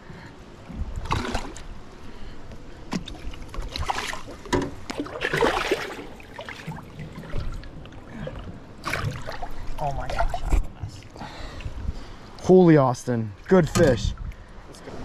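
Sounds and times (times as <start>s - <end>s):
creek water splashing: 3.2s - 10.6s.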